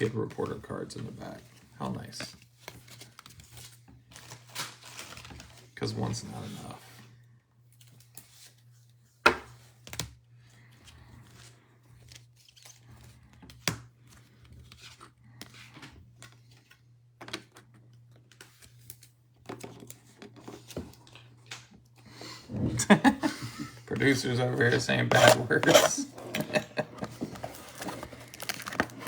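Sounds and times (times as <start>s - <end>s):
packaging crinkling and tearing: 3.0s - 5.6s, 27.3s - 29.0s.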